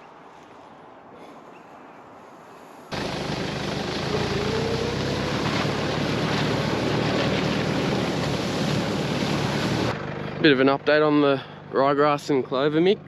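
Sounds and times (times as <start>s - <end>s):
vehicle engine running: 2.9s - 13.0s.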